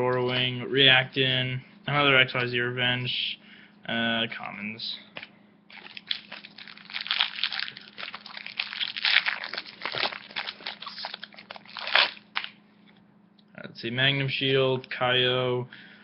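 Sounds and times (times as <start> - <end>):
foil wrapper crinkling: 5.7 - 12.6.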